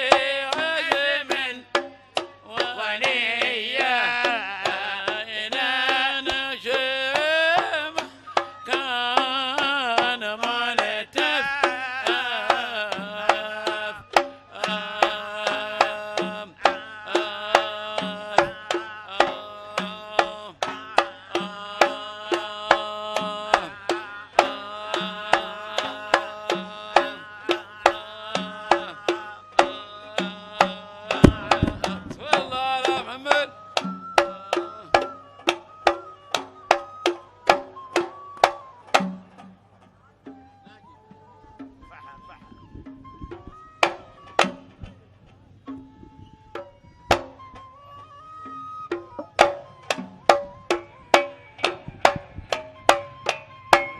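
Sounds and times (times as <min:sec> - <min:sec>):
held melody line: 0:00.0 - 0:39.6, 0:40.2 - 0:53.9
quick hand-drum strokes: 0:00.0 - 0:40.8, 0:48.5 - 0:53.9
heavy low drum hit: 0:31.2 - 0:32.5.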